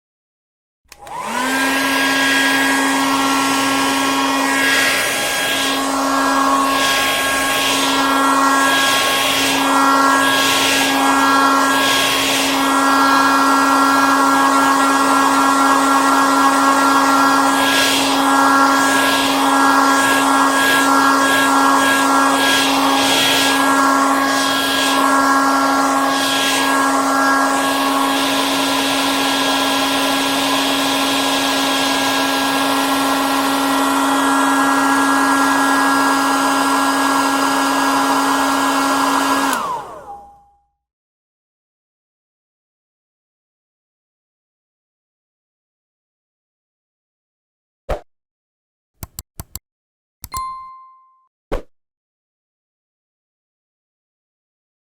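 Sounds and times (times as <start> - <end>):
hair dryer running: 0.9 - 40.5.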